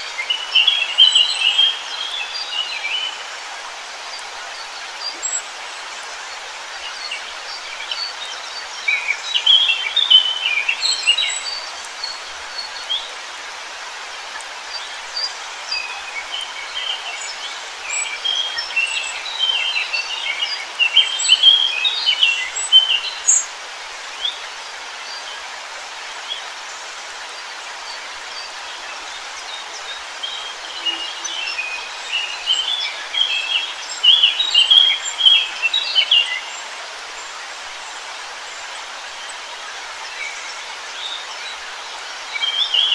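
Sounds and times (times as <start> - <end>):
songbirds chirping: 0.0 - 42.9.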